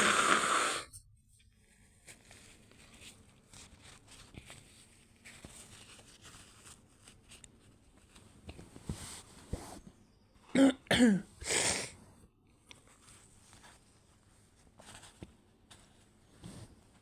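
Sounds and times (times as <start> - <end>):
stifled sneeze: 10.6 - 12.0.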